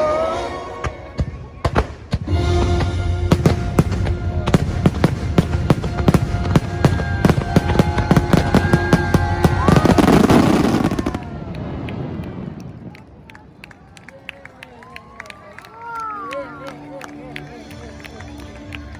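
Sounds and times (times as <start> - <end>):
fireworks bursting: 0.8 - 12.8
fireworks crackling: 0.8 - 13.0
music with low drone: 2.3 - 10.0, 16.3 - 18.9.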